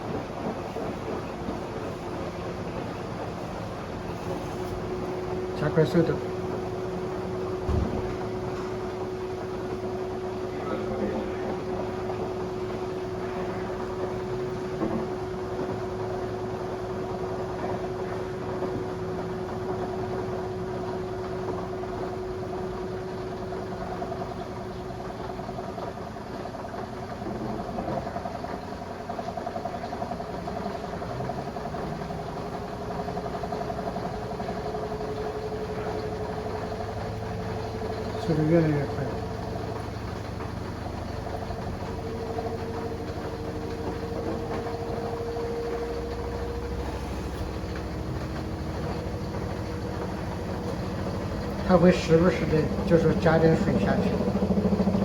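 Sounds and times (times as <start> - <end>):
washing machine spinning: 0.0 - 55.0
motor whine: 27.3 - 55.0.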